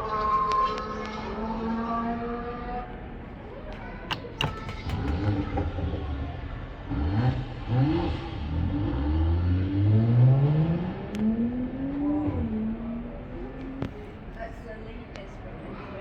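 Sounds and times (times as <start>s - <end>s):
car engine accelerating hard: 6.9s - 13.0s.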